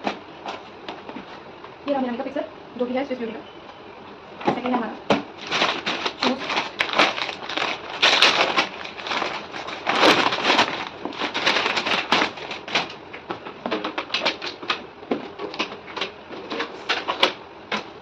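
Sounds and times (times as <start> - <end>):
packaging crinkling and rustling: 4.6 - 18.0
quick clicks and crackles: 5.4 - 17.9.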